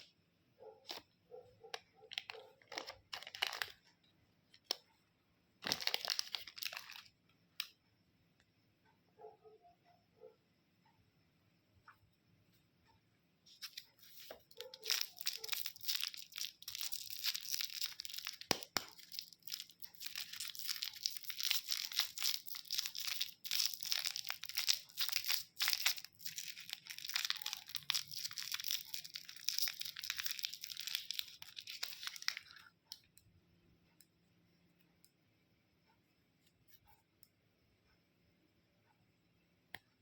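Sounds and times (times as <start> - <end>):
candy wrapper crinkling: 2.1 - 3.9, 5.6 - 7.7, 13.6 - 32.7.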